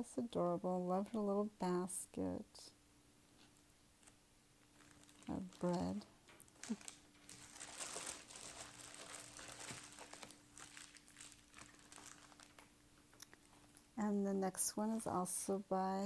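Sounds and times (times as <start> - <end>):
plastic packaging crinkling: 4.0 - 13.9.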